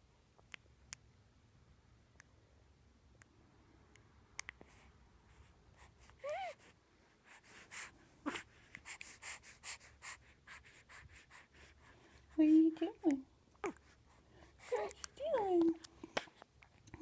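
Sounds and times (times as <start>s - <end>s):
soft clicks and breaths: 3.1s - 6.8s, 7.4s - 9.4s, 10.1s - 17.0s
baby grunting: 13.6s - 13.8s.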